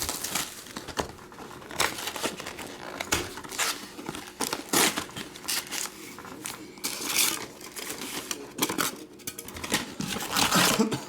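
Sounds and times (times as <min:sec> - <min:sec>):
plastic wrapping crinkling and tearing: 0:00.0 - 0:11.0.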